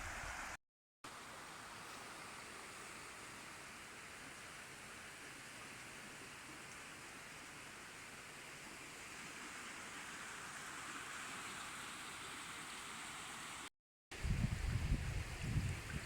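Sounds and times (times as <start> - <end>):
flowing river water: 0.0 - 16.0
wind buffeting microphone: 14.2 - 16.0.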